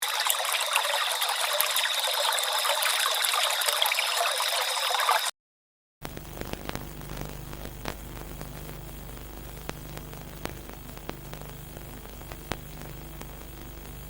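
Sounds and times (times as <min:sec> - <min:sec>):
crackling static hiss: 0:06.0 - 0:14.0
low hum with static: 0:06.0 - 0:14.0.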